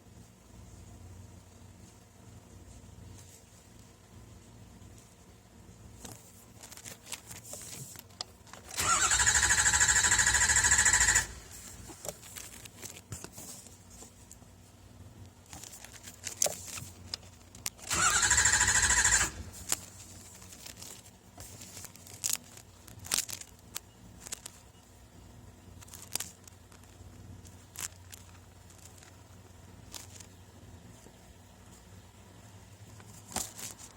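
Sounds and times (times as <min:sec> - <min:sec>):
starter motor cranking engine: 0:08.6 - 0:12.0, 0:17.8 - 0:20.0.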